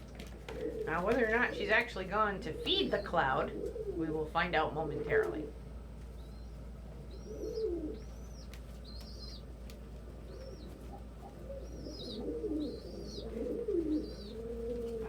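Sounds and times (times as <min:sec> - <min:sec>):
pigeons cooing: 0:00.0 - 0:15.0.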